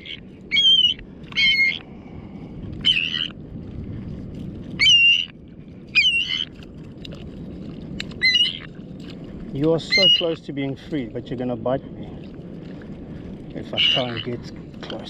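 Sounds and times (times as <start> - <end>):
bird squawking in distress: 0.0 - 1.8, 2.8 - 3.3, 4.8 - 5.3, 6.0 - 6.5, 8.2 - 8.7, 9.9 - 10.4, 13.7 - 14.4.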